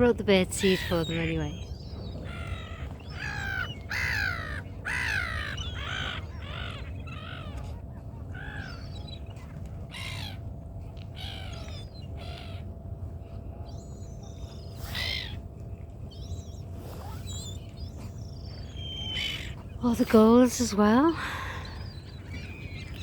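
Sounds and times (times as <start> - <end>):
gulls squawking: 0.4 - 10.5, 14.5 - 15.5, 16.4 - 23.0.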